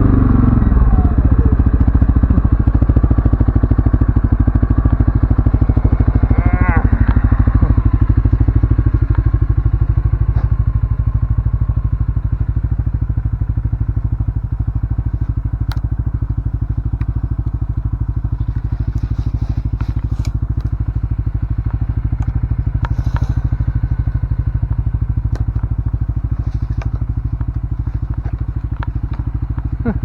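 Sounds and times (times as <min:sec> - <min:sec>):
atv engine running: 0:00.0 - 0:30.0
sharp clicks and rattles: 0:14.4 - 0:30.0.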